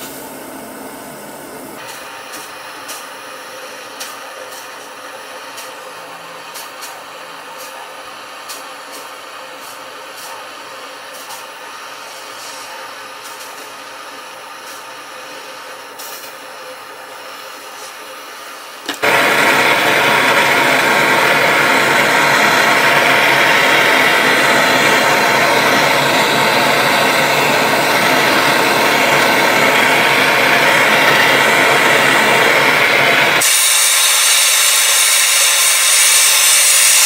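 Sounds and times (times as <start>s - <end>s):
electric power tool running: 18.9s - 37.0s.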